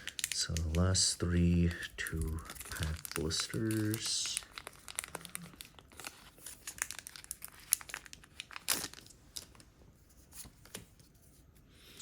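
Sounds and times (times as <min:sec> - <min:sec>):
packaging torn and crinkled: 0:00.0 - 0:01.1, 0:01.8 - 0:09.6.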